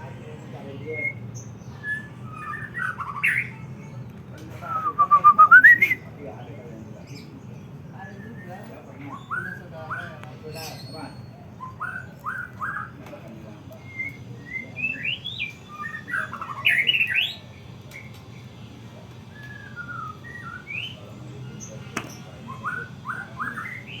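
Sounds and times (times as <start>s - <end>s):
bird singing whistled notes: 1.0s - 3.6s, 4.6s - 6.1s, 8.0s - 13.0s, 13.7s - 18.2s, 19.3s - 21.7s, 22.4s - 24.0s.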